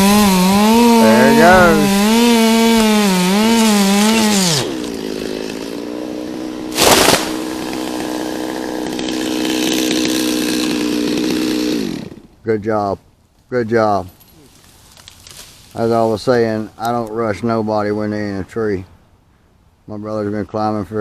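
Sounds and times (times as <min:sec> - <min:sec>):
chainsaw cutting wood: 0:00.0 - 0:12.4
loud burst of noise: 0:06.7 - 0:07.9.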